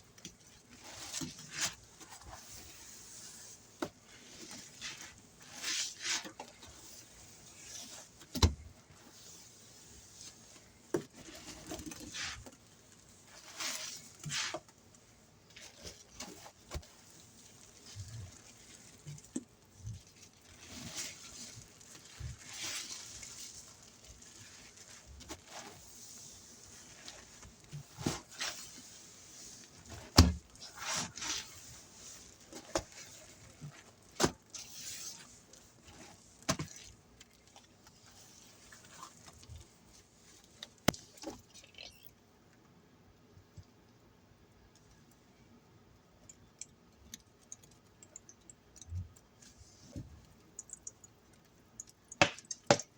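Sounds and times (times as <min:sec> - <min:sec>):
wet sponge squelching: 0:00.4 - 0:14.8, 0:15.5 - 0:42.1.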